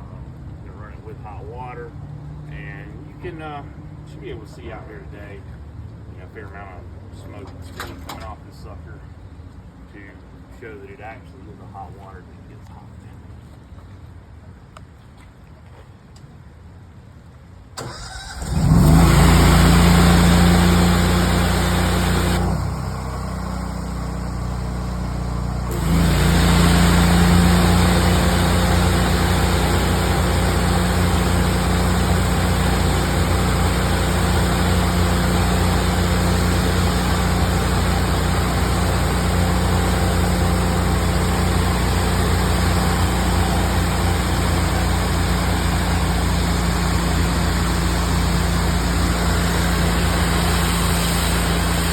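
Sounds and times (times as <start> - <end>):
pressure washer engine running: 17.8 - 51.9
hissing water spray: 25.7 - 51.9.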